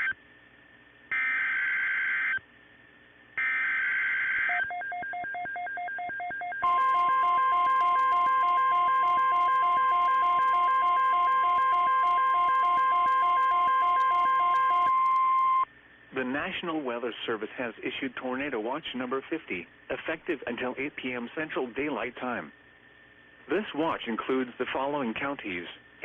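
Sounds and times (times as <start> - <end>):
alternating beeps: 4.5 - 15.7
steady single-pitch attention tone: 6.4 - 15.6.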